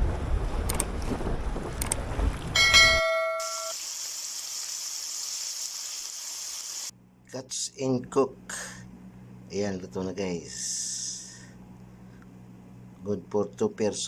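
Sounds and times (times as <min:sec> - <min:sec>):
wind buffeting microphone: 0:00.0 - 0:03.0
short bell-like chime: 0:02.6 - 0:03.8.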